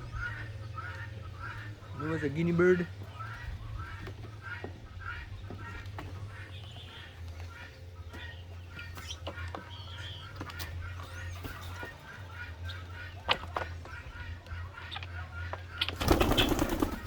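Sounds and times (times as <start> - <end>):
poultry calling: 0.0 - 17.0.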